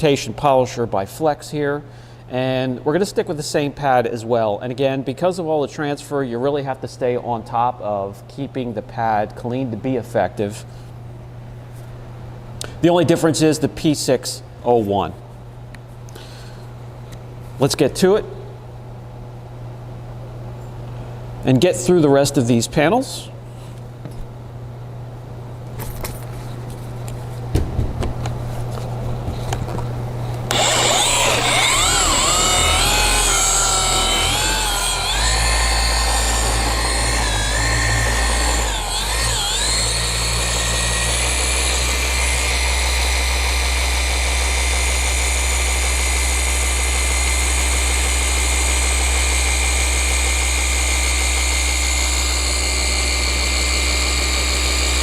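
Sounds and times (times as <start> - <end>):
low hum: 29.7 - 55.0
polisher whining: 30.5 - 55.0.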